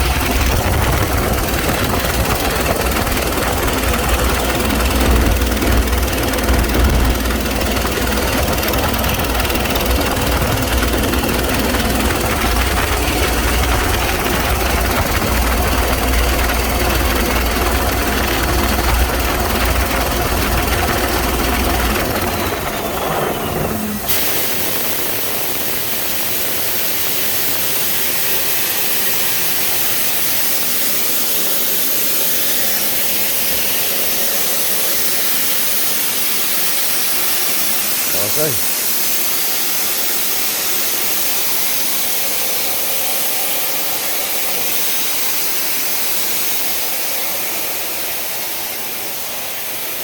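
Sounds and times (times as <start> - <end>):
air compressor engine running: 0.0 - 50.0
loud hiss of air: 22.8 - 38.0.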